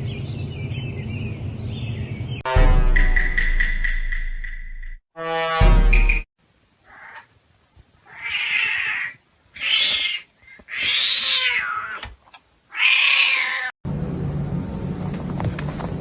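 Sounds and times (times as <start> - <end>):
cat meowing: 8.1 - 12.1, 12.7 - 13.7.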